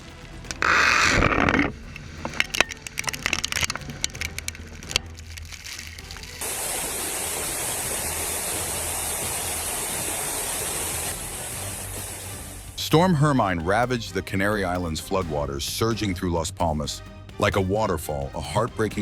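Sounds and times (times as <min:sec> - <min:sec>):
debris cracking and clattering: 0:01.2 - 0:06.4
floodwater rushing: 0:01.8 - 0:13.0.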